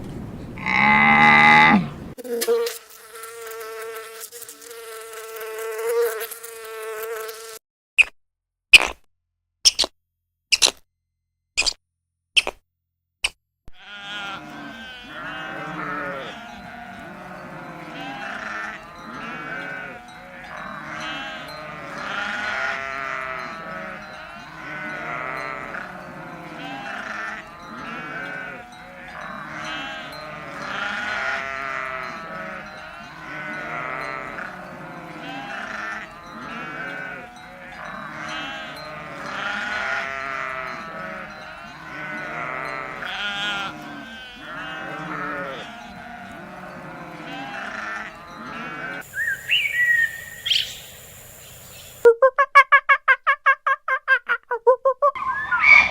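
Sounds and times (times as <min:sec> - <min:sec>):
sheep bleating: 0:00.6 - 0:01.9, 0:13.7 - 0:49.8.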